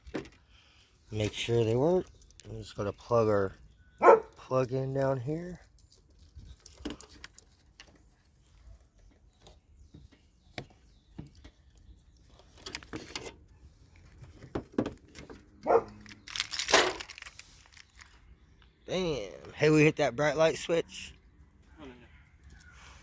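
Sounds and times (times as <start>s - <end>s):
hands clicking and rustling wiring: 4.3s - 18.8s.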